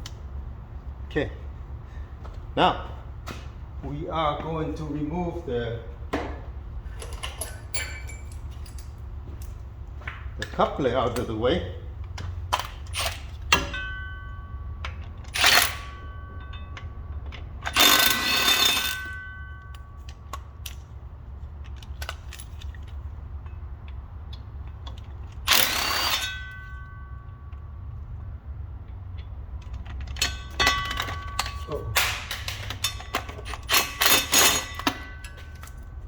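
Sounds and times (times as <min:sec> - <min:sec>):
steady low hum: 0:00.0 - 0:36.0
metal tools clanking: 0:06.3 - 0:09.6, 0:10.5 - 0:20.9, 0:21.6 - 0:27.9, 0:29.0 - 0:36.0.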